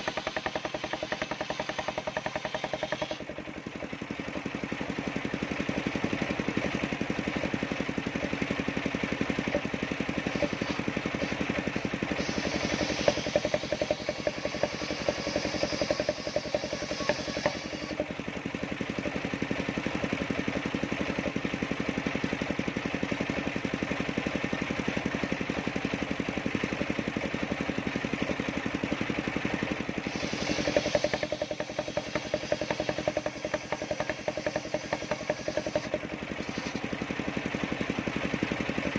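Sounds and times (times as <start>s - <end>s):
saw blade cutting timber: 0.0s - 3.4s, 9.1s - 18.2s, 29.5s - 37.2s
sawmill engine running: 0.0s - 38.9s.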